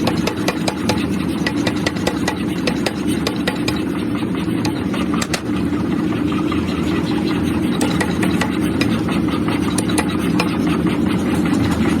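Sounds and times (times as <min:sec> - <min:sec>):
workshop machinery humming: 0:00.0 - 0:12.0.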